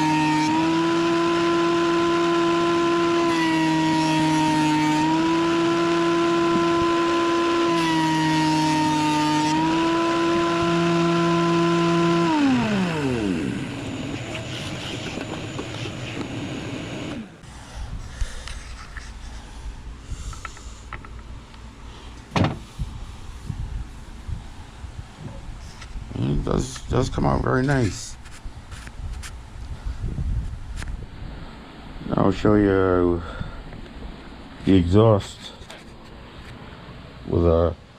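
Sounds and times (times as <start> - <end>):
thickness planer motor whine: 0.0 - 17.5.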